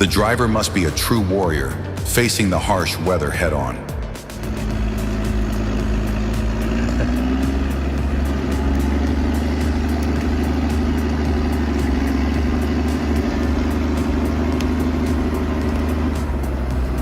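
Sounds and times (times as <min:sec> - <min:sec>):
truck engine running: 0:00.0 - 0:17.0.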